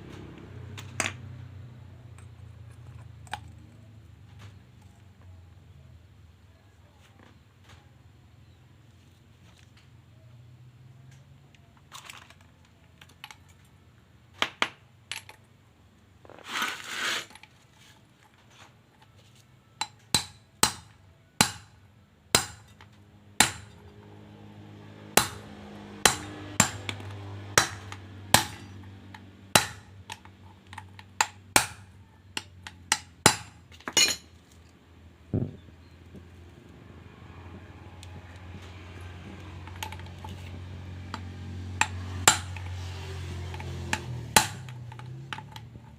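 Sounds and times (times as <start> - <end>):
metal scraping rasp: 16.4 - 17.4
hammer striking metal: 19.8 - 21.7, 22.4 - 22.7, 23.4 - 23.8, 25.2 - 28.7, 29.6 - 29.9, 41.8 - 42.6, 43.9 - 44.7.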